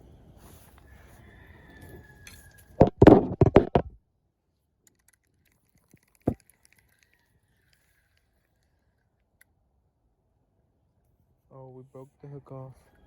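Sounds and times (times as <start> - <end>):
loud knocks: 2.8 - 4.0.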